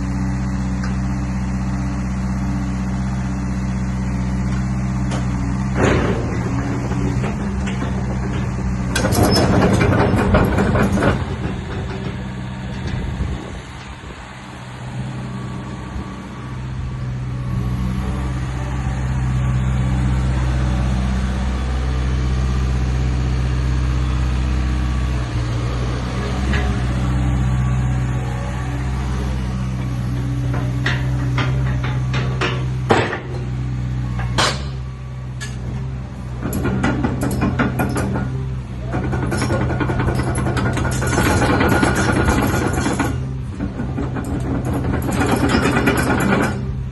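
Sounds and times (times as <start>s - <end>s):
excavator diesel engine running: 0.0s - 46.9s
loud clatter: 5.7s - 13.4s, 36.4s - 46.8s.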